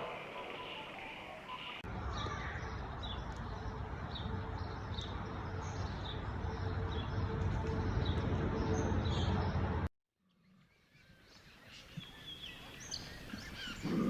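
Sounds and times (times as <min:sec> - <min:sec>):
rumbling outdoor noise: 0:00.0 - 0:09.9.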